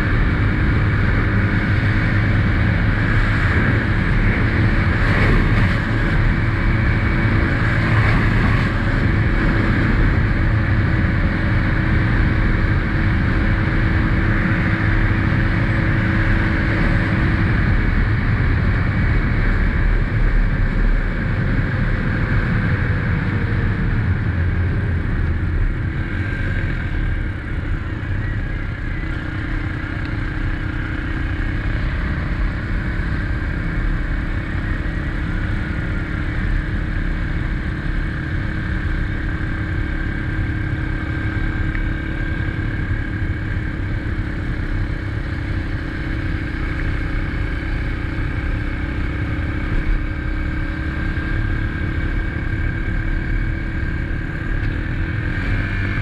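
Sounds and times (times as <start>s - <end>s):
dirt bike engine running: 0.0s - 56.0s
wind rumble on microphone: 0.0s - 56.0s.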